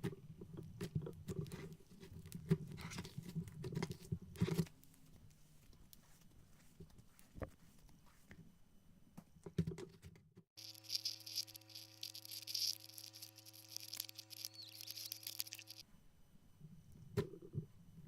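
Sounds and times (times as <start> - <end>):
electrical hum: 10.6 - 15.8.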